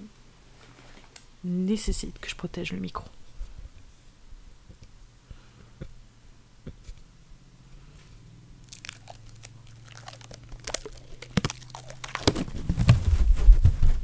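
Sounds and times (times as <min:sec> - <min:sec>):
crinkling against microphone: 0:08.0 - 0:14.0.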